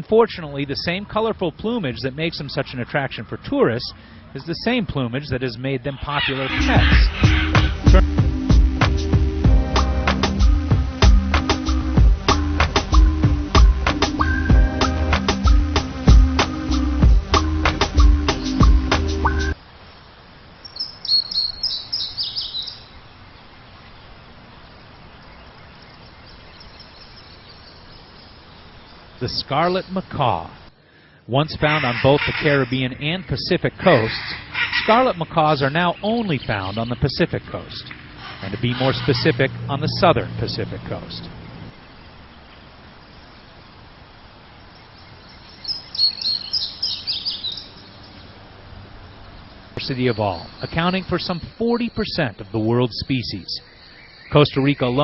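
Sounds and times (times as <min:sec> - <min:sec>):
steady background hiss: 0:00.0 - 0:55.0
high-pitched bird chirps: 0:06.0 - 0:08.0, 0:20.7 - 0:22.9, 0:45.6 - 0:48.1
small bird chirping: 0:20.6 - 0:24.1, 0:25.0 - 0:30.1, 0:44.5 - 0:52.4, 0:53.0 - 0:55.0.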